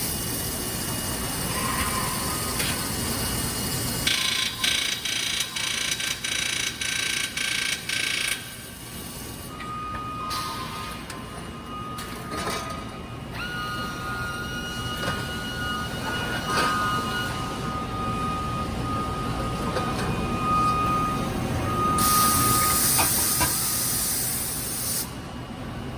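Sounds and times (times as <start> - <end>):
machinery high whine: 0.0 - 24.4
machinery low hum: 8.7 - 23.8.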